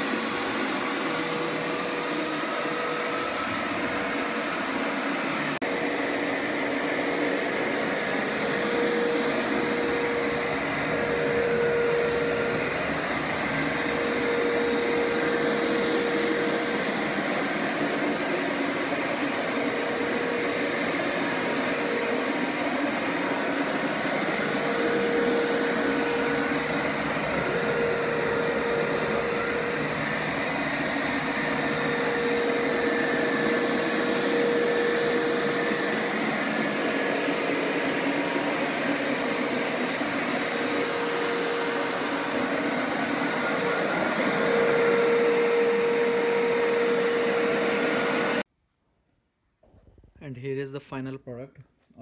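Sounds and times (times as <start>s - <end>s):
carpet washer motor whining: 0.0s - 48.4s.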